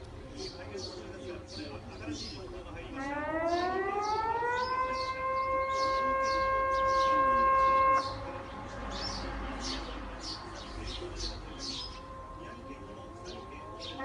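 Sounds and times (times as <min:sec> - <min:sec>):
birds chirping faintly: 0:00.0 - 0:14.0
warning siren wail: 0:02.8 - 0:08.7, 0:11.3 - 0:14.0.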